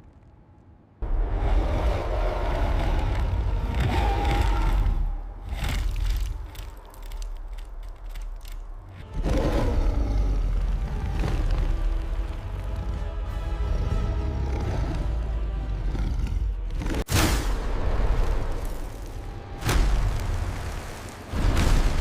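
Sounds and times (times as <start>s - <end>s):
sharp crackling impacts: 16.8s - 22.0s.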